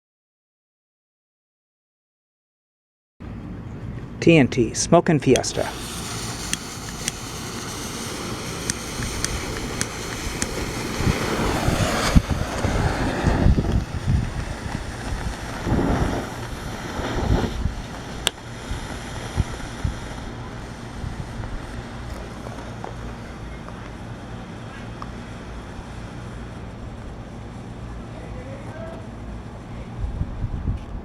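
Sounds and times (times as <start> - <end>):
sharp clicks: 5.3 - 11.1
hiss of burning fireworks: 5.3 - 30.4
wind buffeting microphone: 5.4 - 31.0.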